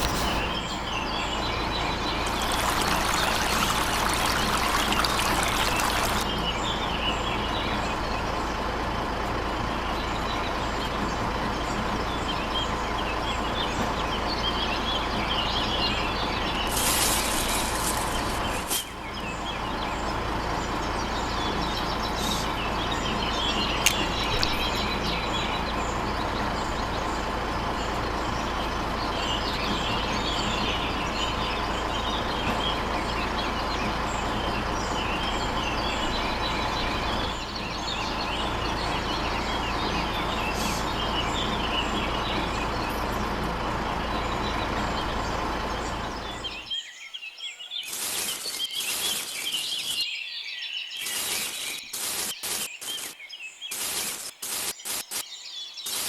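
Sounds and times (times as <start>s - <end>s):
birds chirping: 0.0s - 56.0s
small motor running: 2.2s - 6.3s, 16.7s - 18.9s.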